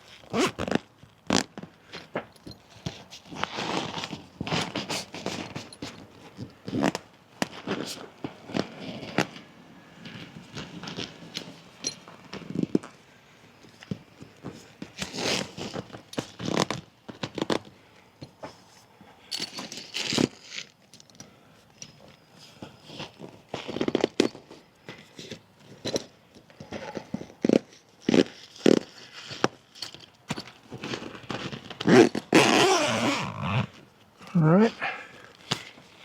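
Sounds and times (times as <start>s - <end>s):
tent fabric rustling: 30.7s - 36.0s.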